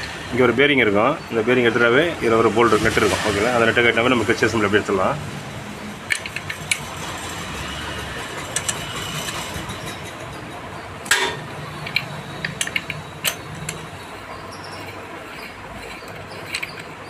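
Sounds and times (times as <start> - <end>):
hand tools clinking on metal: 8.5 - 17.0.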